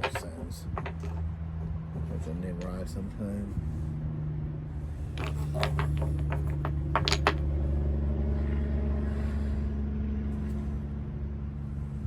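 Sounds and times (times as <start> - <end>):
wooden blocks clacking: 0.0 - 1.2, 5.0 - 7.4
low mechanical hum: 0.0 - 12.0.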